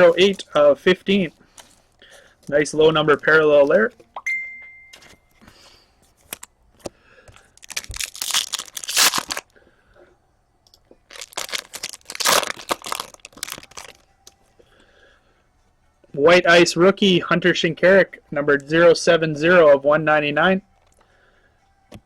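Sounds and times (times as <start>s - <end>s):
foil wrapper tearing and crinkling: 7.6s - 9.5s, 11.1s - 14.0s.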